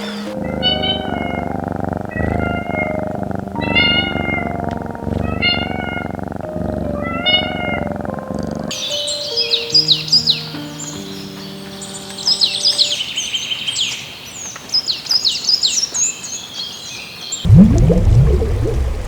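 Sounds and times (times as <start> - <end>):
cat meowing: 0.0 - 8.7
birds chirping: 0.0 - 19.0.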